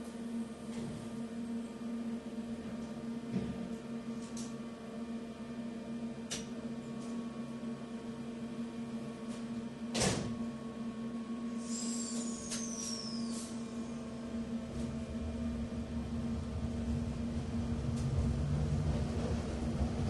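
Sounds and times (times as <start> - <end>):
electrical hum: 0.0 - 20.0
train rumble: 11.7 - 20.0.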